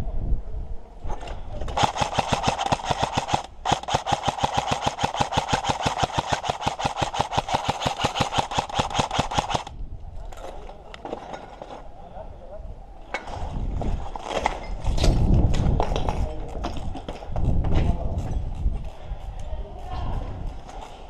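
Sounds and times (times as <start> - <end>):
airsoft gun automatic fire: 1.7 - 9.7.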